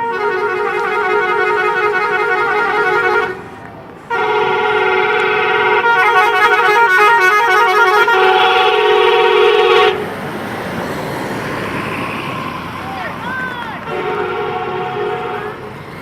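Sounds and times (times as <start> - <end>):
bus musical horn tune: 0.0 - 10.1, 13.8 - 15.7.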